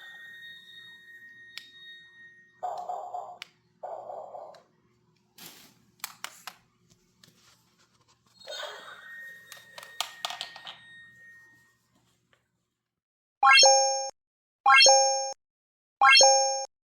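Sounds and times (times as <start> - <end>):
thin high tone: 0.0 - 2.7.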